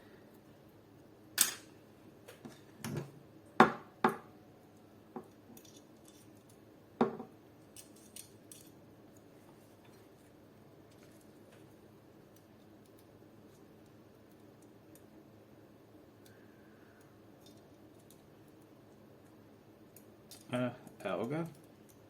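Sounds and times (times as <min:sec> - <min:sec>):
metal allen keys clinking: 0:05.5 - 0:06.6, 0:07.6 - 0:08.8.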